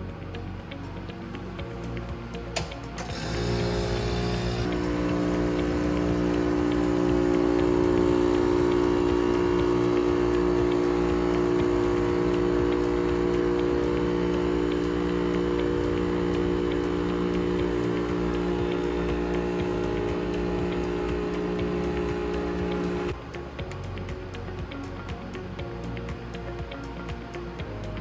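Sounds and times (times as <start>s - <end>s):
truck engine droning hum: 3.4s - 23.2s.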